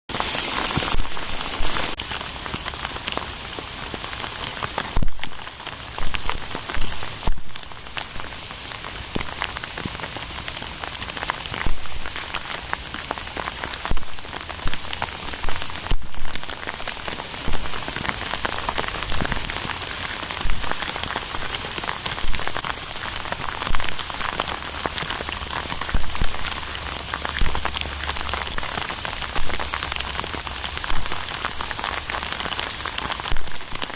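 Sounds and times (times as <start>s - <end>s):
hail striking hard surfaces: 0.1s - 33.9s.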